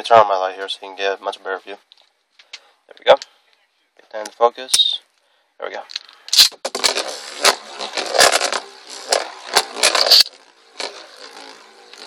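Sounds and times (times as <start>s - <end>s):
spinning top scraping in plastic stadium: 6.4s - 12.0s.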